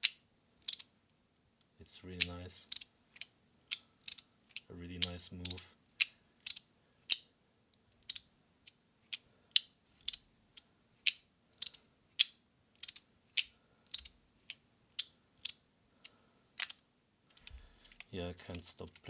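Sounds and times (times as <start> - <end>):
fidget slider clicking: 0.7 - 0.9, 16.6 - 19.0.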